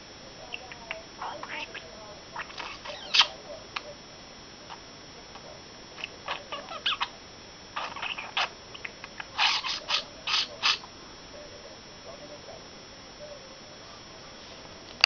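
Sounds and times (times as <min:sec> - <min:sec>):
budgerigar chirping and warbling: 0:00.5 - 0:03.9, 0:06.0 - 0:07.2, 0:07.8 - 0:10.9.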